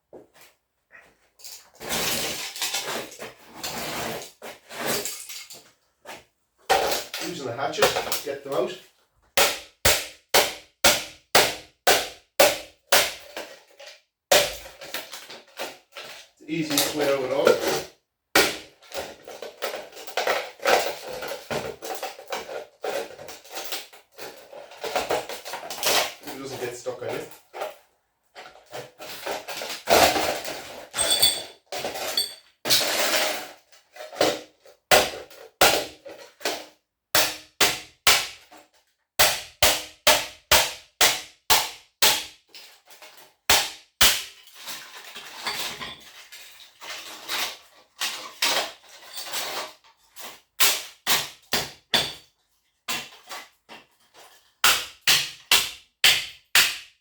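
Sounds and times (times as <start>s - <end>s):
hatchet striking metal: 51.9s - 52.2s, 54.6s - 56.9s.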